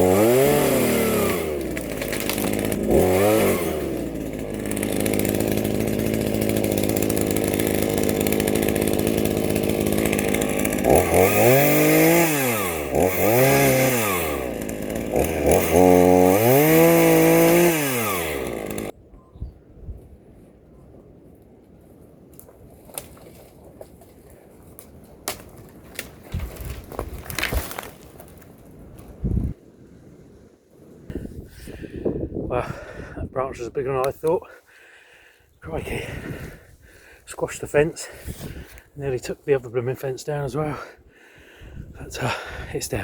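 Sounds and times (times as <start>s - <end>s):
chainsaw cutting wood: 0.0s - 19.0s, 24.8s - 29.5s.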